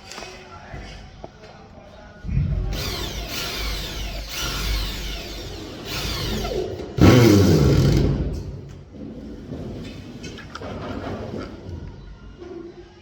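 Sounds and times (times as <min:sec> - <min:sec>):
power drill running: 0:02.7 - 0:08.2.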